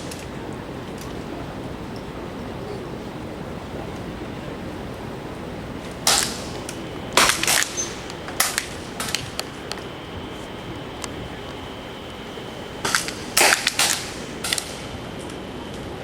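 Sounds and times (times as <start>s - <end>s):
air rifle shots cracking: 6.0s - 9.6s, 12.8s - 14.9s.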